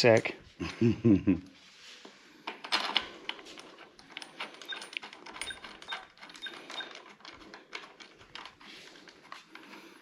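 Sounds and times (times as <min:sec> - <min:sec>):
metal hardware clicking and clinking: 0:02.5 - 0:08.6.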